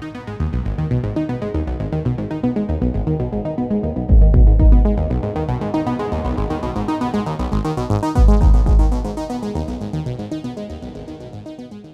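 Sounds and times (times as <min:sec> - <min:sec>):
electronic synthesizer music: 0:03.3 - 0:10.3
heavy bass hits: 0:04.1 - 0:05.1, 0:08.2 - 0:09.2.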